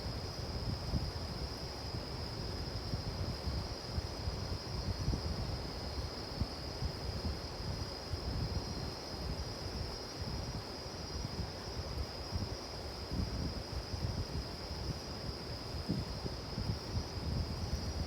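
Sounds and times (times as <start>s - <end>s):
high-pitched insect trill: 0.0s - 18.0s
wind and flames rumbling: 0.0s - 18.0s.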